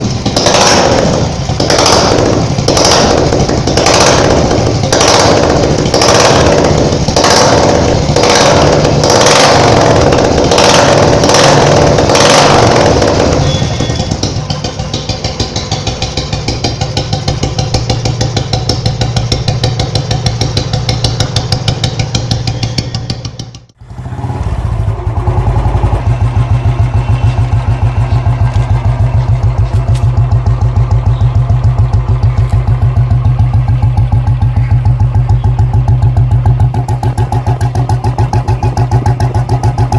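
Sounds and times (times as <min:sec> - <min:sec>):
motorcycle exhaust thumping: 0:00.0 - 0:24.0, 0:24.7 - 0:39.9.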